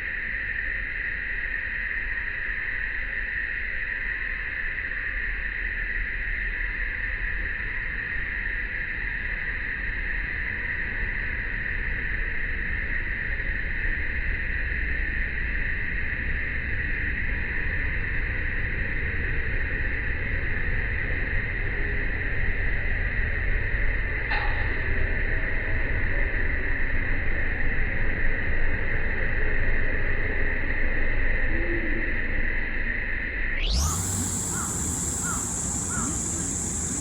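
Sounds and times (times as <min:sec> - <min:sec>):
cicadas buzzing: 0:33.6 - 0:37.0
low rumble: 0:33.6 - 0:37.0.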